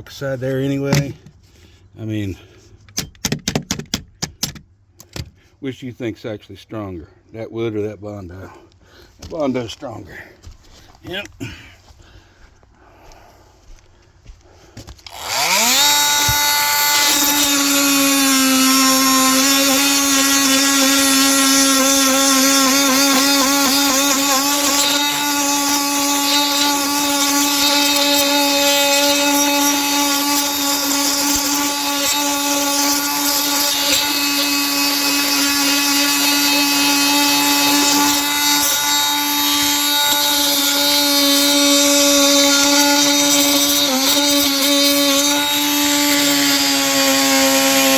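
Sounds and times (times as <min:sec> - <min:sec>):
electric power tool whine: 0:14.8 - 0:47.9.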